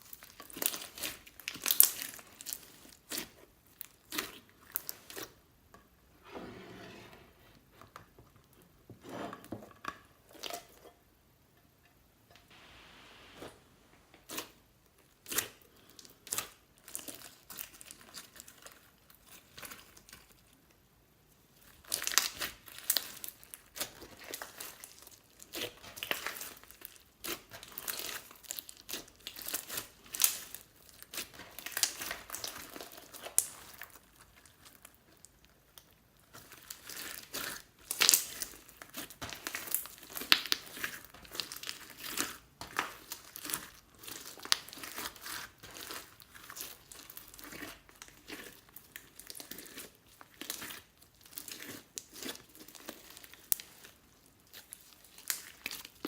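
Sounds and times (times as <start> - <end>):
slime crackling and clicking: 55.1 - 55.9.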